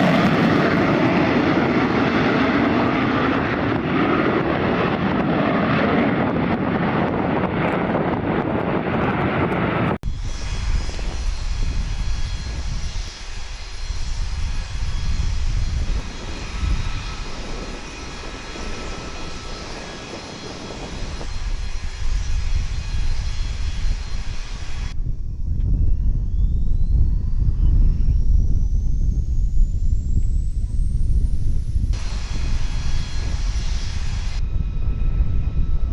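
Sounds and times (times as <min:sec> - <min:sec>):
jet engine rumble: 0:00.0 - 0:35.9
faint rising whine: 0:10.1 - 0:35.9.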